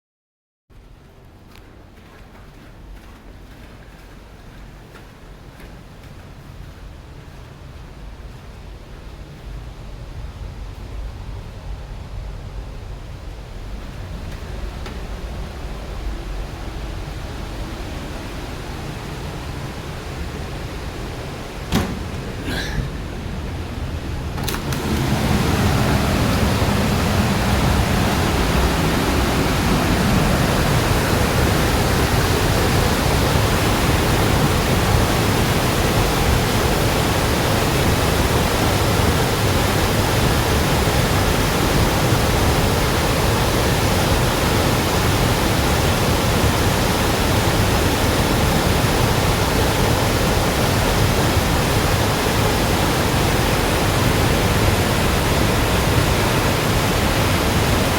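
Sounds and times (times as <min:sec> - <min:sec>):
river torrent rushing: 0:14.0 - 0:57.9.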